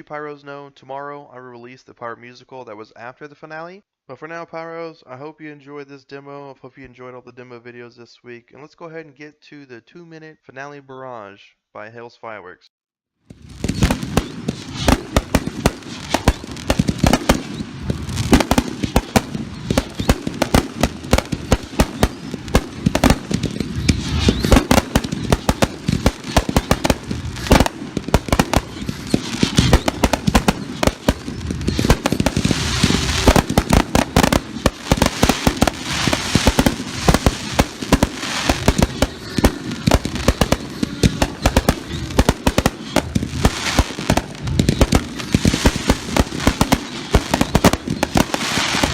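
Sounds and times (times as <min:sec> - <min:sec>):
fireworks launching and bursting: 0:13.3 - 0:48.9.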